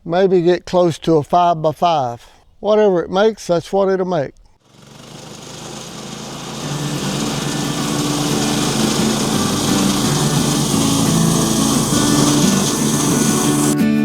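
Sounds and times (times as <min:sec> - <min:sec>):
small gasoline engine running: 0:04.6 - 0:13.8
band blade hissing: 0:04.8 - 0:13.8.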